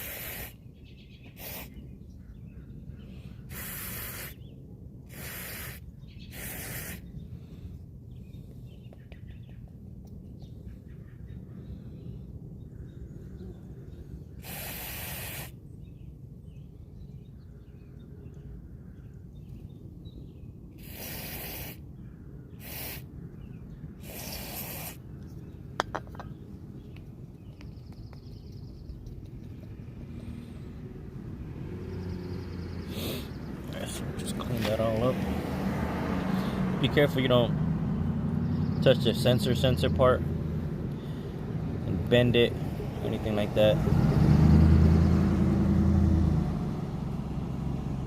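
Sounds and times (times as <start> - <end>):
aerosol can spraying: 0.0 - 0.5, 1.4 - 1.7, 3.5 - 4.3, 5.1 - 7.0, 14.4 - 15.5, 20.8 - 21.8, 22.6 - 23.0, 24.0 - 25.0.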